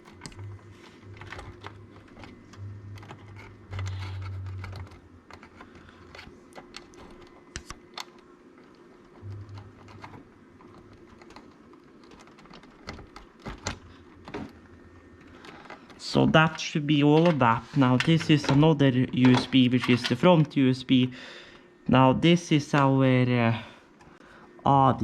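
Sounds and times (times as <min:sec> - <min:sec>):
low buzz: 0:00.0 - 0:05.4.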